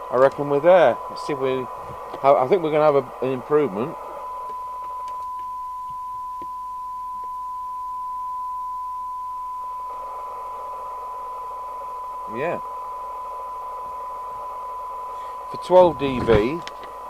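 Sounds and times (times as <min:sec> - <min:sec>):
radio hiss: 0:00.0 - 0:04.6, 0:09.8 - 0:17.0
steady test tone: 0:00.0 - 0:17.0.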